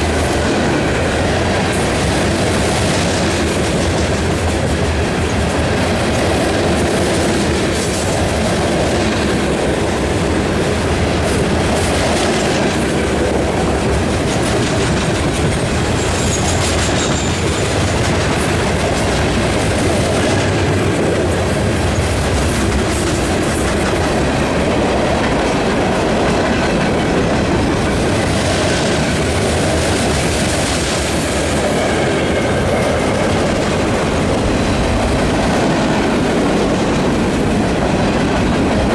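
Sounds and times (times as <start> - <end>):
freight train wheels clacking: 0.0 - 38.9.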